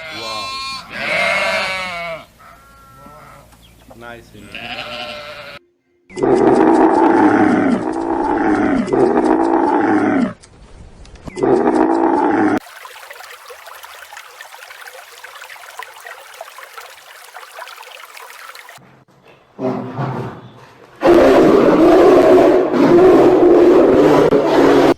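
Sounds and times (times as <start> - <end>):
faint steady hiss: 12.6 - 18.8.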